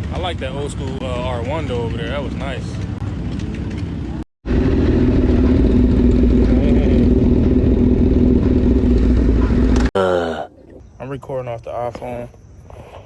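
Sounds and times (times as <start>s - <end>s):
vehicle engine running: 0.0s - 9.9s.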